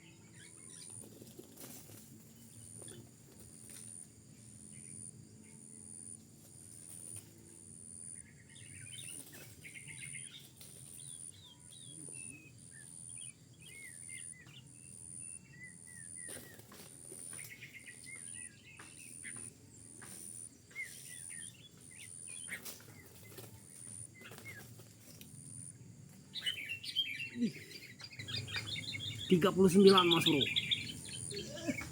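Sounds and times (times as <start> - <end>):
birds chirping: 7.0 - 31.9.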